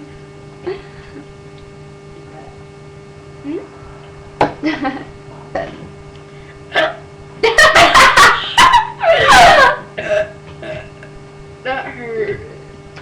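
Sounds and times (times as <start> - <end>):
person burping: 5.5 - 5.9, 10.0 - 11.1.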